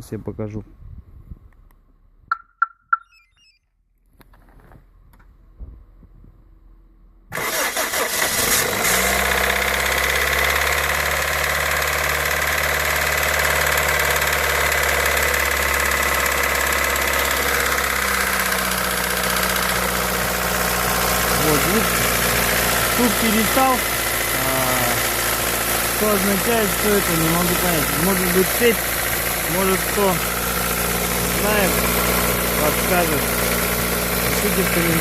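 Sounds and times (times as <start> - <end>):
short beeps: 2.3 - 3.6
car engine starting and idling: 4.3 - 35.0
engine knock: 9.2 - 35.0.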